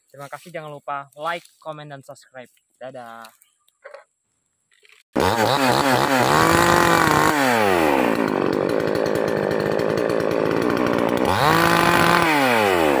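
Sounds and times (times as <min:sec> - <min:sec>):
chainsaw engine revving: 0:05.2 - 0:13.0.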